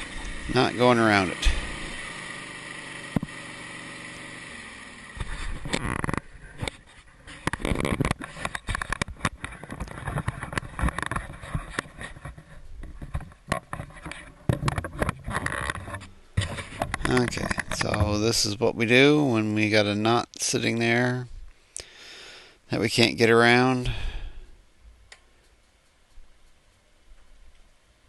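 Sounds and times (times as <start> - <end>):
sawmill humming: 0.0 - 7.6
knocks clunks and scrapes: 5.2 - 18.7.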